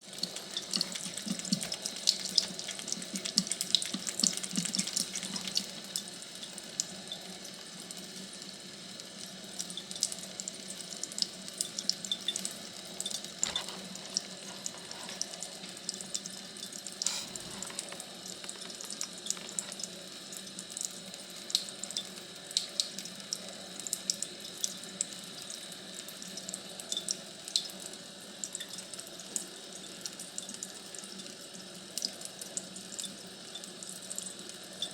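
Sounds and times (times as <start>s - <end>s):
water running: 0.0s - 8.5s, 9.6s - 23.1s
small sharp splashing ticks: 0.2s - 6.0s.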